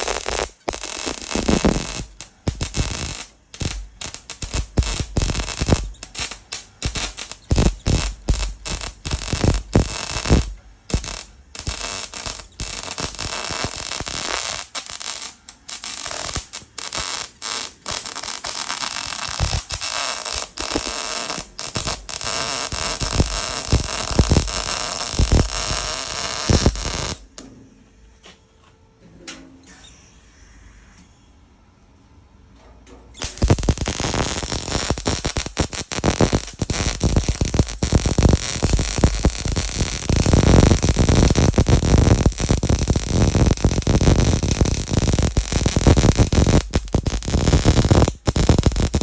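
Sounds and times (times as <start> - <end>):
welding arc crackling: 0.0 - 27.4, 33.2 - 49.0.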